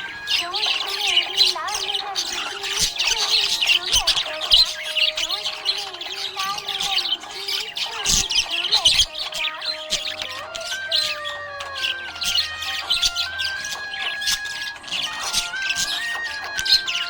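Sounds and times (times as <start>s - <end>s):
budgerigars chattering and chirping: 0.0s - 17.0s
slow background music: 0.0s - 17.0s.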